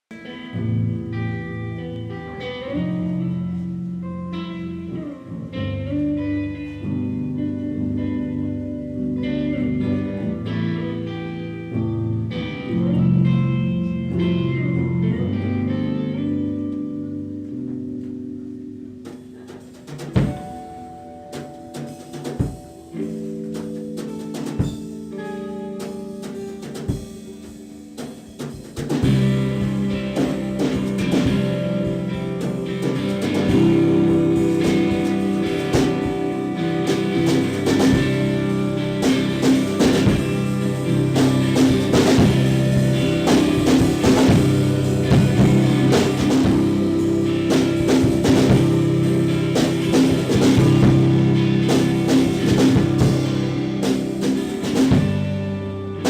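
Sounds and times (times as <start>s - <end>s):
live band playing: 0.1s - 56.0s
drum hits: 19.0s - 25.1s, 25.8s - 55.6s.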